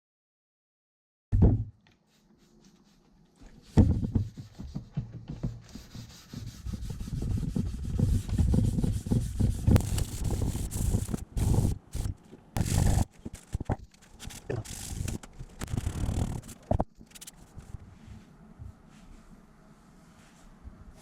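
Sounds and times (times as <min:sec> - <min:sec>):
sandpaper rubbing fibreglass: 0:05.5 - 0:17.8.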